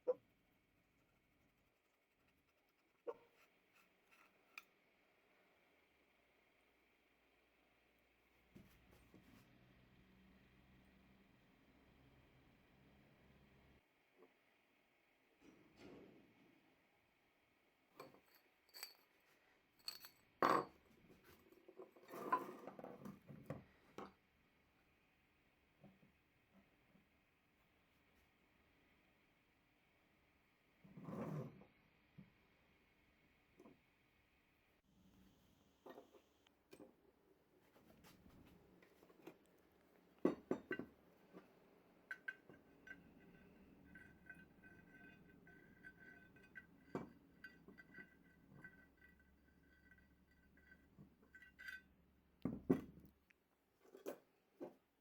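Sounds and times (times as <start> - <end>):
metal tools clinking: 18.0 - 20.8.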